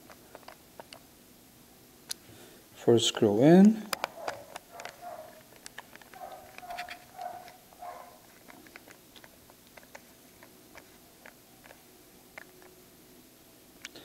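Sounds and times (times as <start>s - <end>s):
soft handling noise: 3.2s - 12.8s
screwdriver turning tiny screw: 4.0s - 7.6s.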